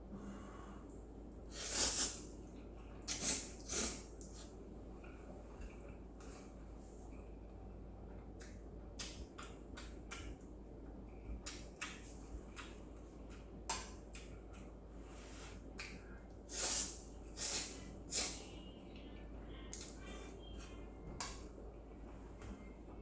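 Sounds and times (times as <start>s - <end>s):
wet chewing with mouth clicks: 11.4s - 14.7s.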